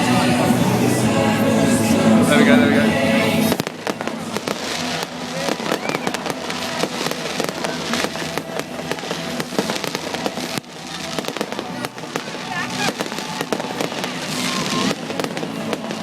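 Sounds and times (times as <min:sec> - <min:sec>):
fireworks bangs and crackles: 0:03.3 - 0:16.0.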